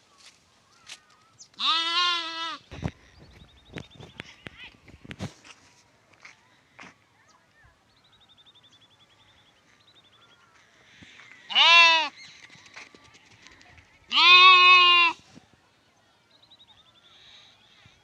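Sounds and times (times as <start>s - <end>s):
lamb bleating: 1.6s - 2.6s, 11.5s - 12.1s, 14.1s - 15.2s.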